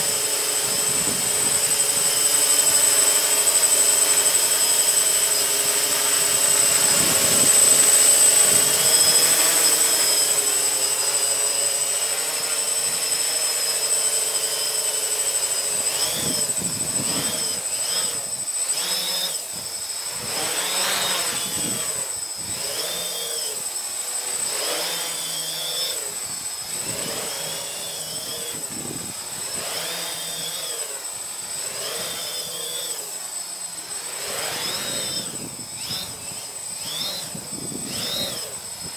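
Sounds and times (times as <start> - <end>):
drone propellers whining: 0.0 - 38.9
wind rumble on microphone: 6.8 - 9.1, 16.0 - 17.6, 21.3 - 22.7, 34.8 - 38.9.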